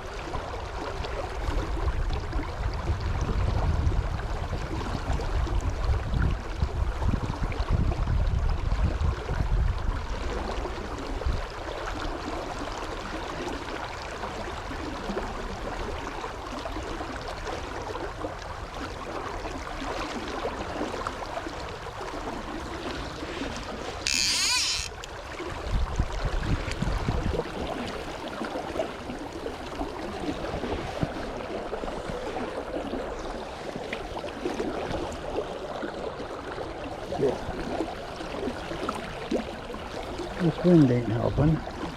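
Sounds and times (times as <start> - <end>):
wind rumbling on microphone: 0.0 - 40.3
river water rushing: 11.6 - 25.8.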